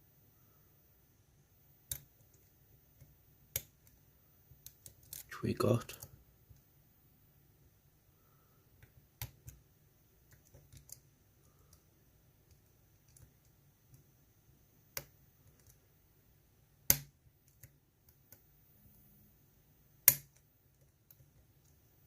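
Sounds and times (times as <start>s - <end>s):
lock pick metallic clicks: 20.0s - 21.2s.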